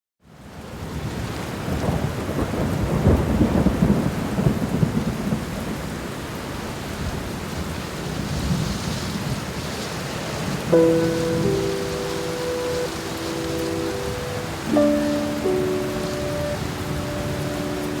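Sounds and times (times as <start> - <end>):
steady rainfall: 0.2 - 18.0
thunder rumbling: 10.4 - 18.0.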